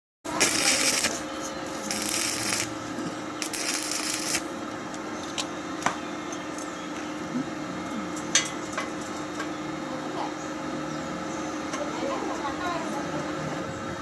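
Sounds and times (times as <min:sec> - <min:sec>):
electric arc crackling and hissing: 0:00.3 - 0:04.6
steady low hum: 0:00.3 - 0:14.0.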